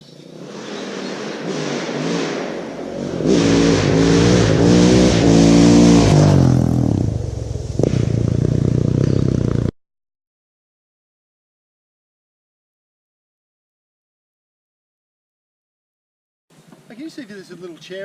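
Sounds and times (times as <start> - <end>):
motorcycle engine revving: 0.1 - 9.8.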